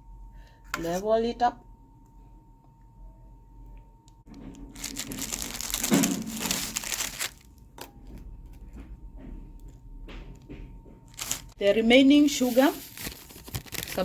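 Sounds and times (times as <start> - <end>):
food packaging crinkling: 4.5 - 7.9, 11.1 - 11.6, 12.2 - 14.0.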